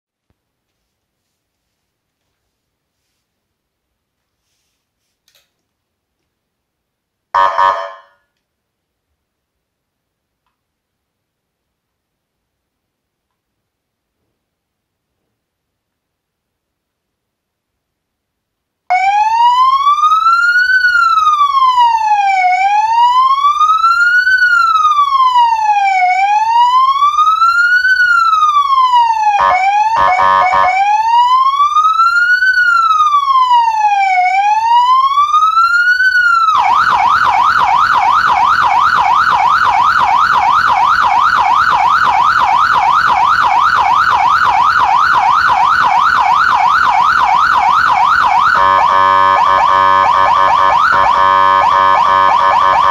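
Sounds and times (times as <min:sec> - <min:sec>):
police siren wailing: 0:07.4 - 0:08.1, 0:18.9 - 0:52.9
siren fast yelp: 0:07.4 - 0:08.1, 0:18.9 - 0:52.9.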